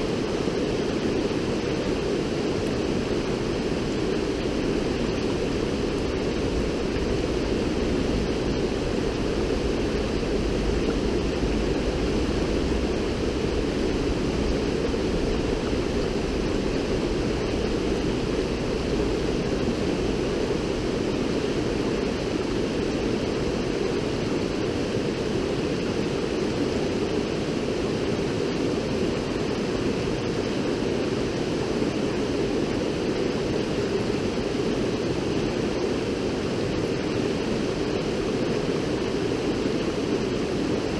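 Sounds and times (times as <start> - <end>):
river water rushing: 0.0 - 40.9
low rumble: 4.4 - 22.1.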